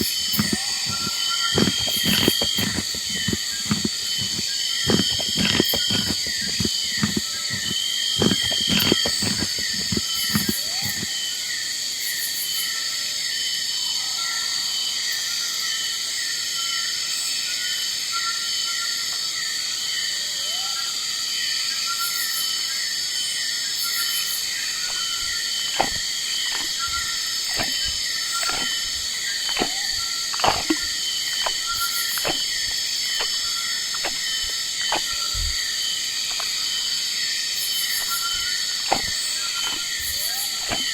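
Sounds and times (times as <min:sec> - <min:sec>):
insect chorus buzzing: 0:00.0 - 0:12.7, 0:23.7 - 0:40.9.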